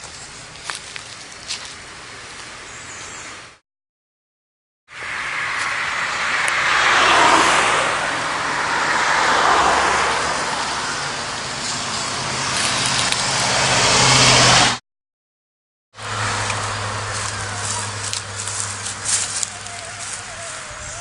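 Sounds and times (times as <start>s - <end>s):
tyres on rough ground: 8.1s - 14.4s, 16.0s - 21.0s.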